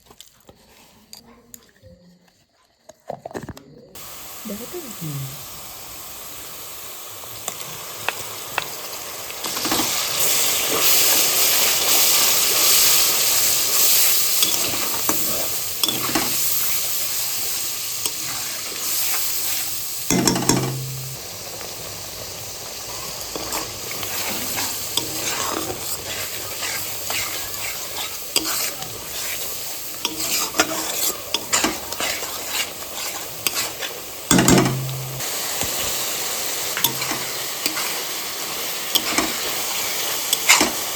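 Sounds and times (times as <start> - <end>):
gizzards sizzling in a pan: 4.0 - 40.9
spatula scraping a pan: 9.6 - 17.0, 17.9 - 21.2, 22.9 - 35.3, 36.8 - 40.9.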